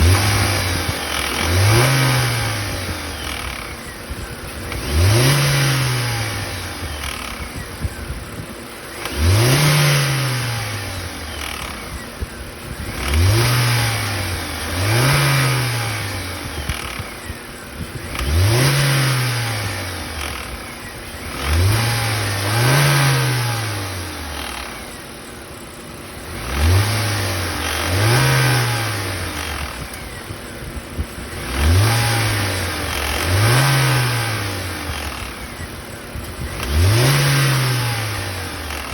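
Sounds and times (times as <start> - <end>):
car engine revving: 0.0 - 38.9
engine rattling: 0.0 - 38.9.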